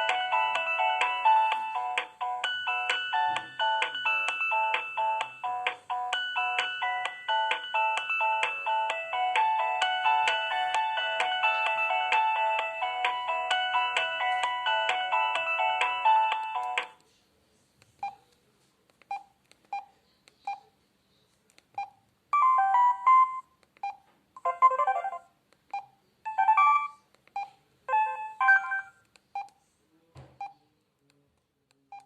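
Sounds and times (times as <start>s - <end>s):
polyphonic ringtone: 0.0s - 17.0s, 22.4s - 23.5s, 24.4s - 25.3s, 26.3s - 27.0s, 27.9s - 29.0s.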